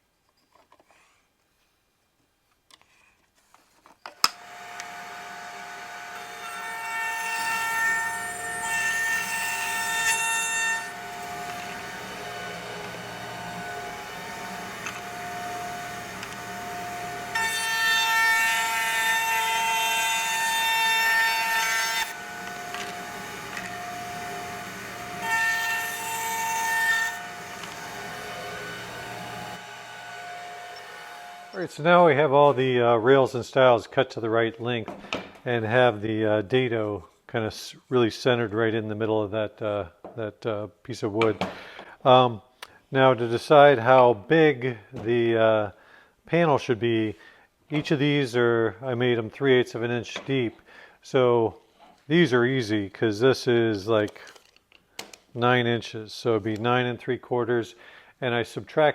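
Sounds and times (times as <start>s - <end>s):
router whining: 4.2s - 31.7s
router cutting wood: 4.2s - 31.8s.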